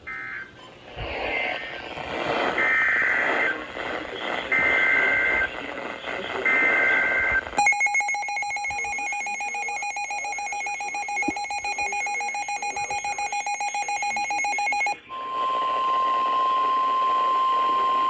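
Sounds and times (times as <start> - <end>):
rapidly pulsing warbling beep: 7.6 - 15.0
steady warning alarm tone: 7.6 - 15.0.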